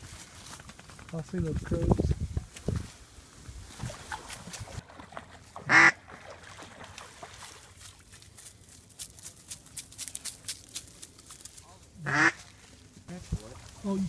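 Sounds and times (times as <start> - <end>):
duck quack: 5.6 - 6.0, 12.0 - 12.4.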